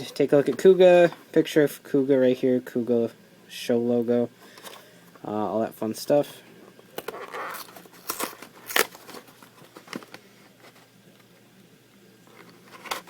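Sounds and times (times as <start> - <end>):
packaging rustling and crinkling: 6.9 - 11.0, 12.3 - 13.0.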